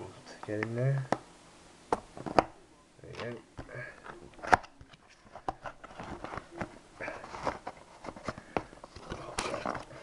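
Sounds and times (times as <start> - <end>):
cardboard and paper rustling: 4.0 - 10.0.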